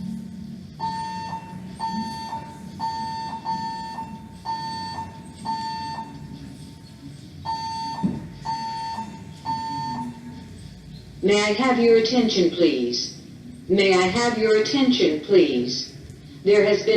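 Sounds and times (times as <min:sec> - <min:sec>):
fire alarm beeping: 0:00.8 - 0:06.4, 0:07.4 - 0:10.5.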